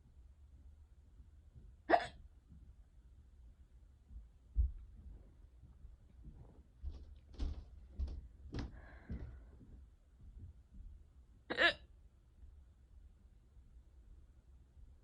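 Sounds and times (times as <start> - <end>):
person hiccuping: 1.9 - 2.2, 11.5 - 11.9.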